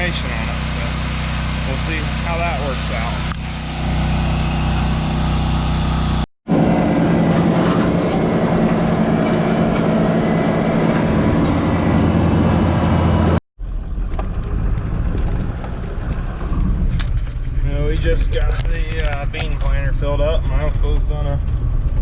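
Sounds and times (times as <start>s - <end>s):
engine running: 0.0s - 22.0s.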